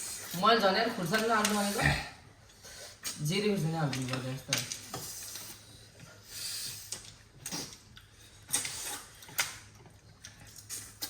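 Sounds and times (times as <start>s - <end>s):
faint slurping: 4.8s - 9.4s.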